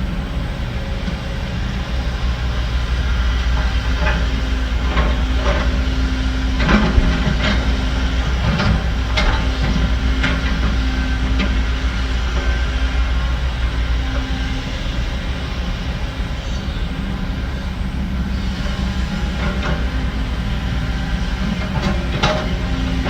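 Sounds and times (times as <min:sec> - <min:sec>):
heavy diesel machinery droning: 0:00.0 - 0:23.0
metallic clanks and knocks: 0:06.6 - 0:10.8, 0:21.4 - 0:23.0.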